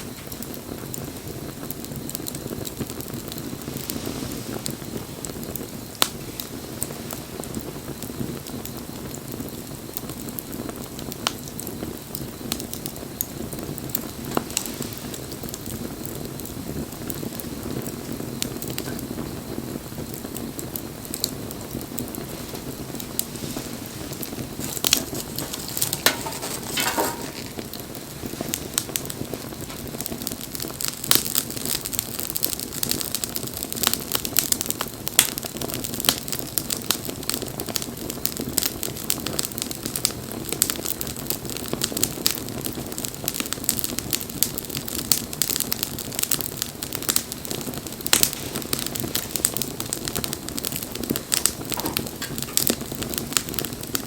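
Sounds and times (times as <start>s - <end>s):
wood fire crackling: 0.0s - 54.0s
sharp pops and snaps: 22.3s - 29.9s, 35.1s - 36.2s.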